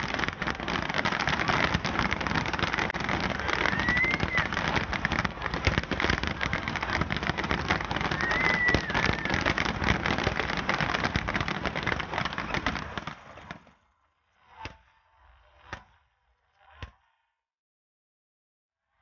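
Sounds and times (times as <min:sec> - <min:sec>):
firework whistles: 0:00.0 - 0:13.7
fireworks crackling: 0:00.0 - 0:13.8.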